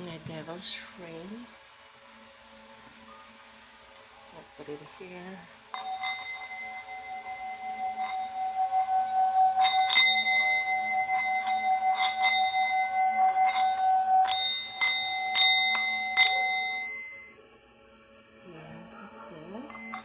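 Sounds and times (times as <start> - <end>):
singing bowl ringing: 4.6 - 20.0
sharp metallic clinks: 4.8 - 17.3, 19.6 - 20.0.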